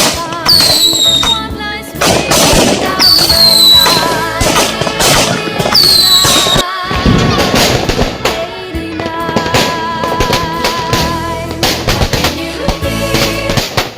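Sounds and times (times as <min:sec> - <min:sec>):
fireworks bangs: 0:00.0 - 0:13.9
fireworks whistles falling in pitch: 0:00.5 - 0:01.5, 0:03.0 - 0:04.4, 0:05.0 - 0:06.6.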